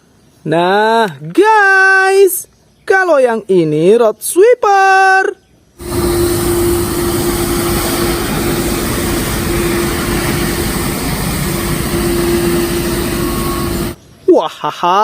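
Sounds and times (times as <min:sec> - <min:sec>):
road sweeper running: 0:05.8 - 0:14.0.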